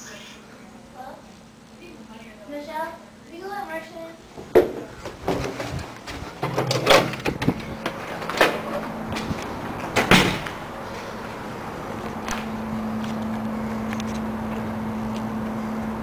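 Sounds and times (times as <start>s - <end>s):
steady low hum: 0.0s - 16.0s
sharp knocks and clunks: 4.4s - 10.6s.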